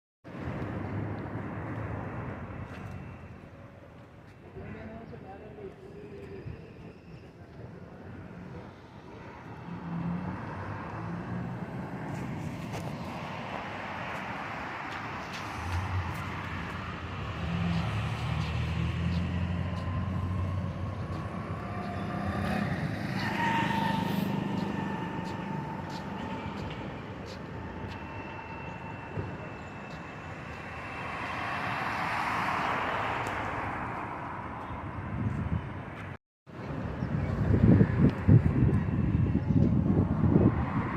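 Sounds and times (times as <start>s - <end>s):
vehicle engine hum: 8.4s - 30.7s.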